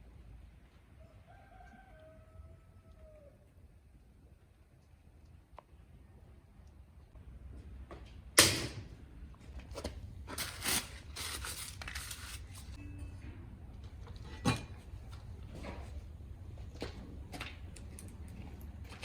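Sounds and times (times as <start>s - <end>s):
rustling: 10.2s - 12.8s.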